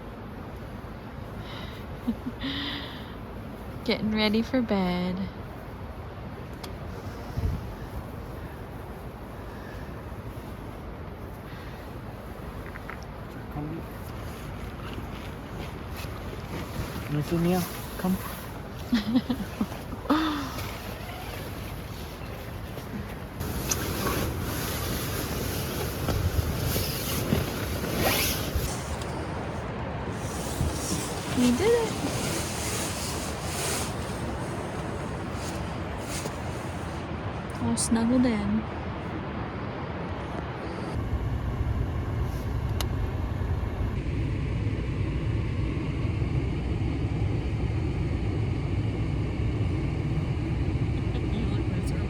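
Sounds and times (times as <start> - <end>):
tent zipper pulled: 20.6 - 22.2, 23.4 - 29.0, 30.2 - 36.9
car engine idling: 41.0 - 52.0.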